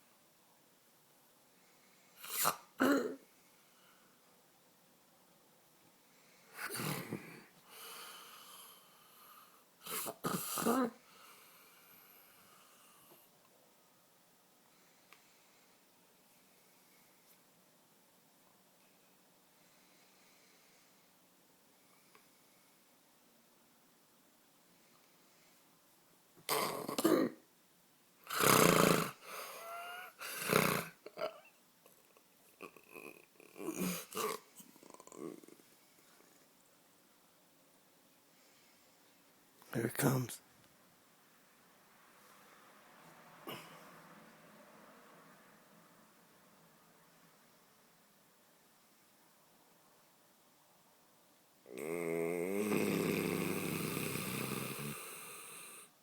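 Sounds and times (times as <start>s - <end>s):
man snoring: 9.9s - 11.0s, 28.3s - 31.3s, 32.6s - 35.6s, 51.7s - 55.9s.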